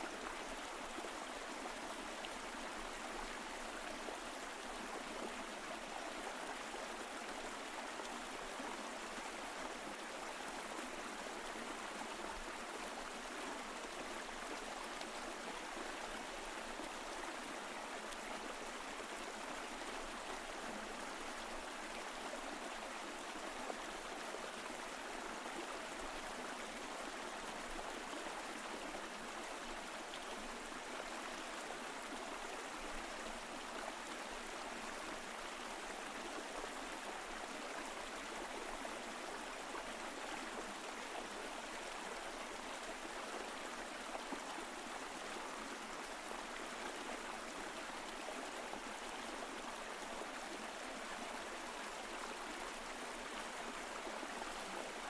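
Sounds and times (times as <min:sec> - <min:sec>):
stream flowing over rocks: 0:00.0 - 0:55.0.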